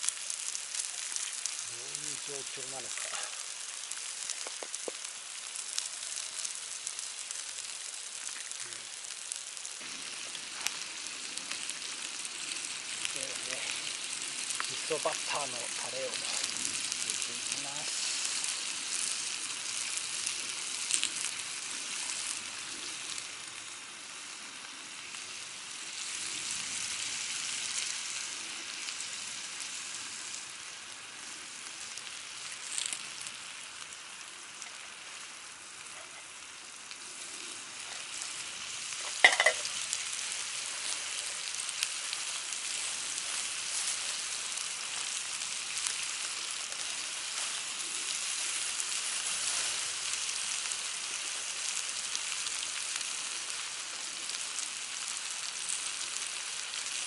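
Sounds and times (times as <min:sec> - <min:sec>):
food sizzling in a pan: 0:00.0 - 0:57.0.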